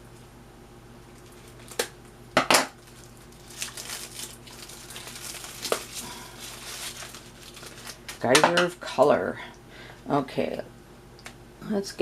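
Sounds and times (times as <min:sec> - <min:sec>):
paper packing crinkling: 0:01.1 - 0:02.0, 0:02.8 - 0:08.3.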